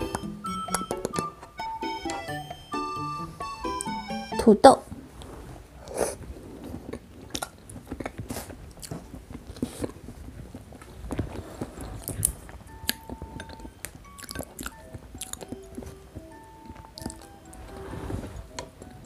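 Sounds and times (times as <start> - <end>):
soft background music: 0.0 - 7.3, 11.4 - 19.0
close chewing and mouth clicks: 6.6 - 17.4.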